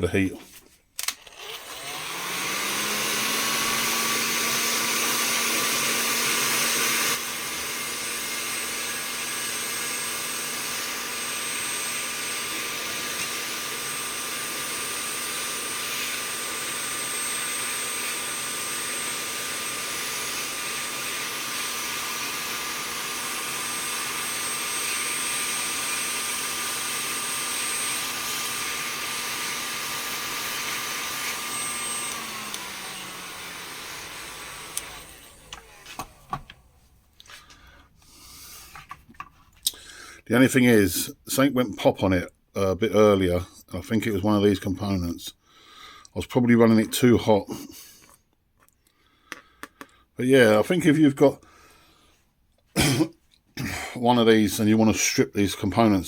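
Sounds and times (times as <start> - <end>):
heat gun blowing hot air: 1.0 - 38.8.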